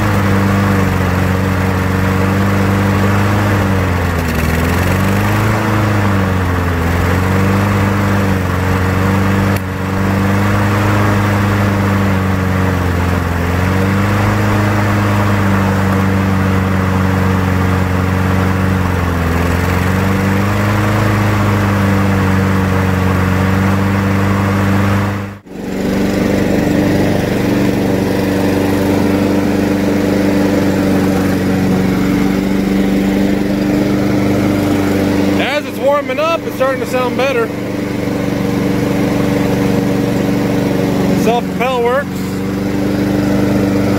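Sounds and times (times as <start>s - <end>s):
lawnmower engine running: 0.0s - 43.9s.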